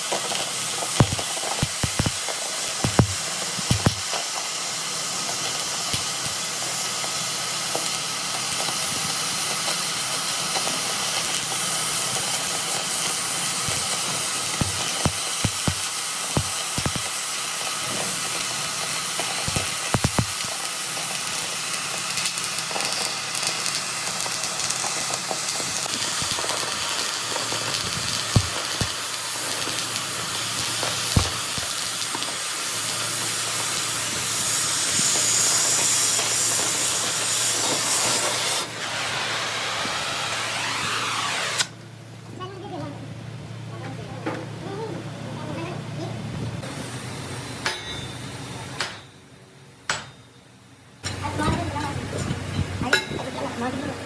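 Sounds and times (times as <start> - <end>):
machine tool hissing: 0.1 - 41.7.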